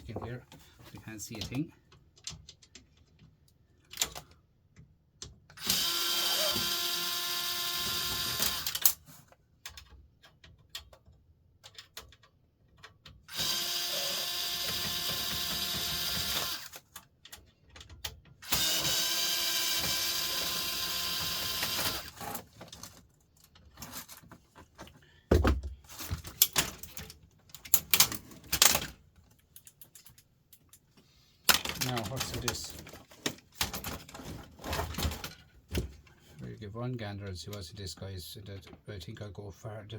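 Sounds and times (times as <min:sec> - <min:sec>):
clicks and knocks of parts: 0:00.0 - 0:05.9, 0:08.3 - 0:36.3
power screwdriver whining: 0:05.6 - 0:09.0, 0:13.3 - 0:16.8, 0:18.4 - 0:22.3.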